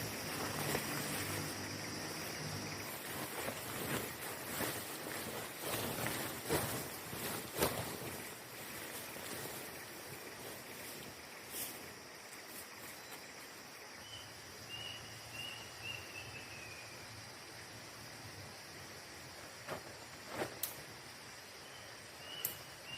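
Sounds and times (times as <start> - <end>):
campfire hissing and crackling: 0.0 - 12.8
high insect buzz: 0.0 - 22.9.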